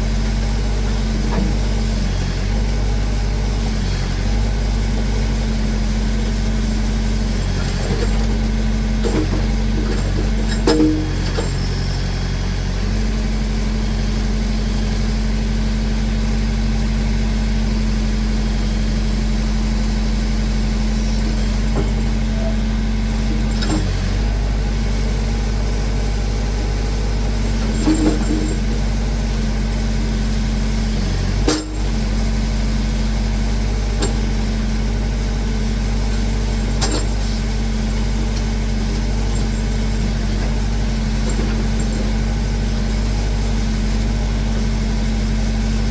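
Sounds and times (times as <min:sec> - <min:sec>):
backhoe engine running: 0:00.0 - 0:45.9
machine clanks: 0:09.0 - 0:12.1, 0:27.6 - 0:28.8, 0:31.4 - 0:32.0.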